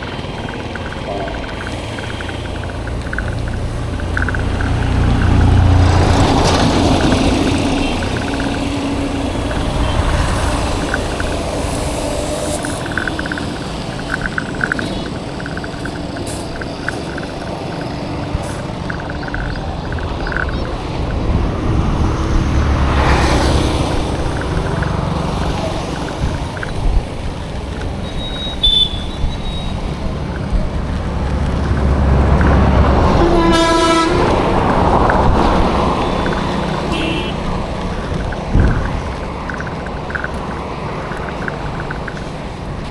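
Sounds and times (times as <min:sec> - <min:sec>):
vehicle passing close: 0:00.0 - 0:28.0, 0:29.3 - 0:42.9
road traffic engine rumble: 0:00.0 - 0:42.9
vehicle horn toot: 0:28.1 - 0:29.7, 0:33.1 - 0:34.4, 0:36.8 - 0:37.5.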